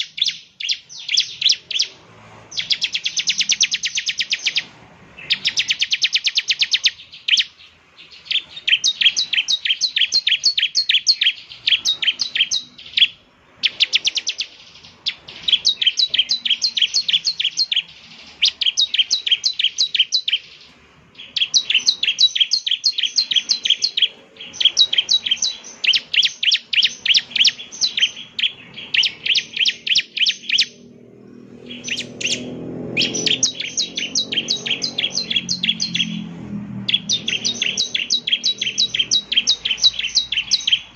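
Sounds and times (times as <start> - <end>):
bird singing high chirps: 0.0 - 40.9
low rumbling noise: 1.3 - 5.8, 26.9 - 40.9.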